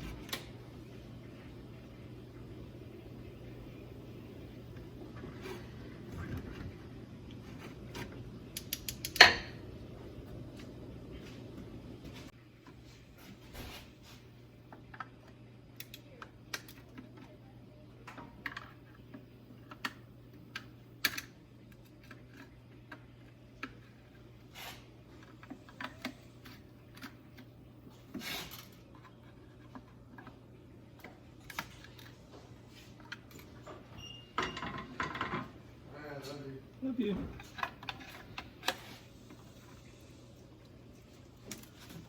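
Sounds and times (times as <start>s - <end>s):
low steady hum: 0.0s - 42.0s.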